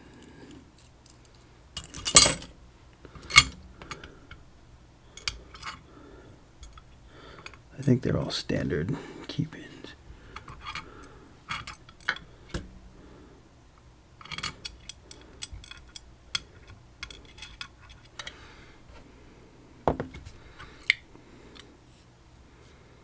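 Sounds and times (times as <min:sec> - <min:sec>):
metallic clicks of tools handled: 0:05.2 - 0:05.8, 0:14.2 - 0:18.4.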